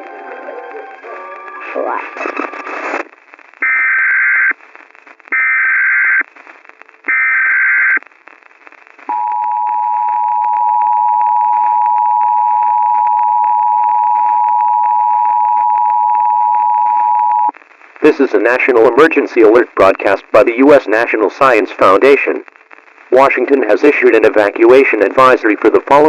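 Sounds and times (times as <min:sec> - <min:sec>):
faint hiss: 0:17.5 - 0:26.0.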